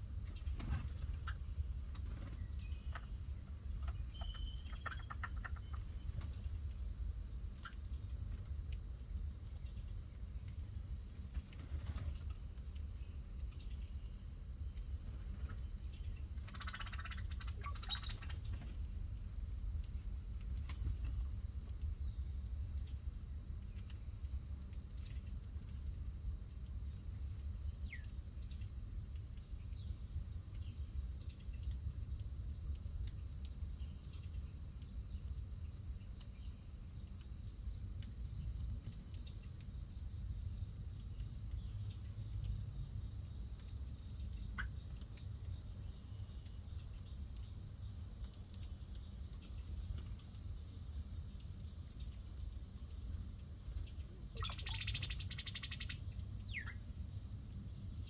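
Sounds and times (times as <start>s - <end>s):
bird call with rising chirps: 16.5s - 18.6s, 54.3s - 56.8s
short bird chirps: 16.5s - 18.6s, 54.4s - 56.8s.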